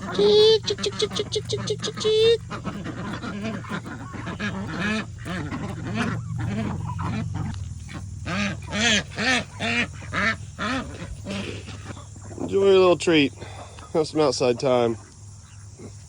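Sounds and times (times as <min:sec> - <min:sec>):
ducks quacking: 0:00.0 - 0:16.0.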